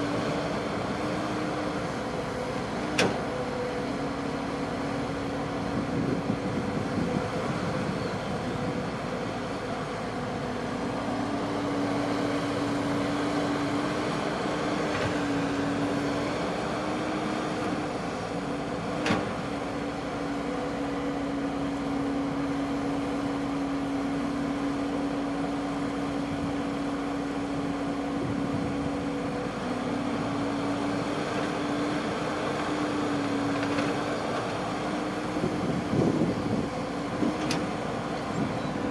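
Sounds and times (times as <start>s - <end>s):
harvester engine running: 0.0s - 38.9s.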